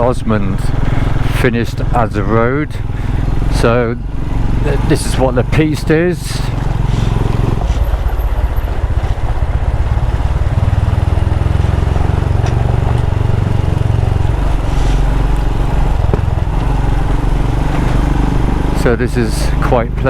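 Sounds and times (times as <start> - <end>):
motorcycle engine running: 0.0 - 20.0.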